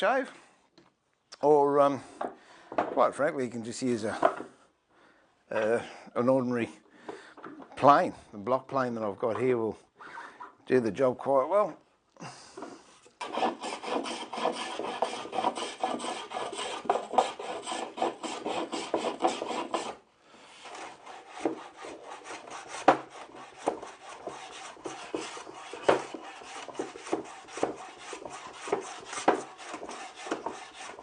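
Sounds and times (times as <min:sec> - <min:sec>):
block plane cutting wood: 0:13.2 - 0:20.0, 0:20.6 - 0:31.0.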